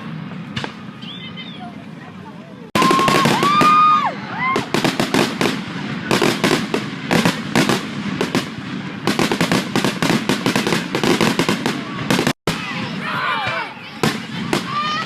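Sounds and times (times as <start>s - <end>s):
firework whistle: 0.0s - 1.7s, 2.8s - 12.0s
fireworks crackling bangs: 0.0s - 15.0s.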